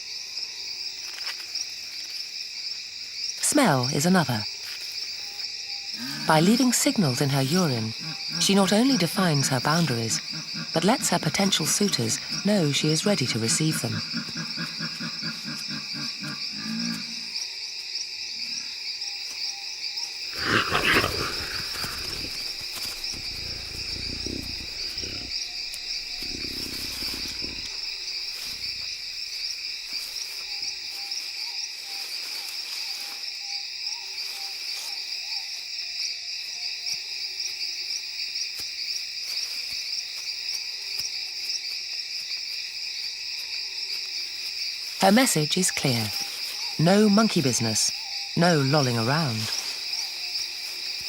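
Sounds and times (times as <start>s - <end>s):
insects chirping: 0.0s - 51.0s
jaguar call: 20.4s - 27.9s.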